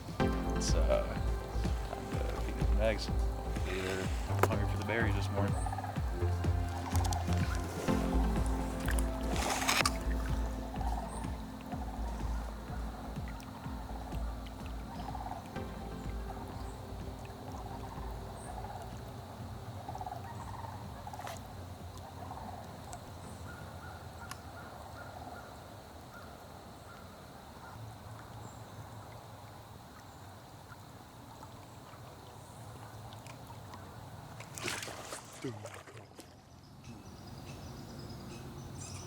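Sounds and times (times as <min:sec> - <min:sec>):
river rushing: 0:00.0 - 0:19.9
faint bird calls: 0:00.0 - 0:28.8.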